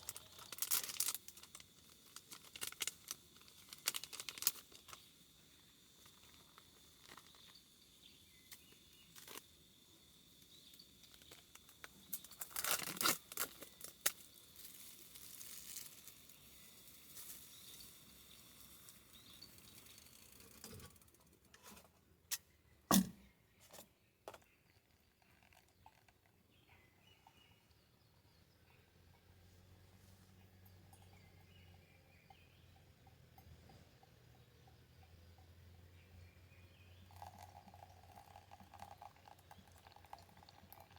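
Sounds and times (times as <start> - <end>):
sharp knock: 22.9 - 23.2.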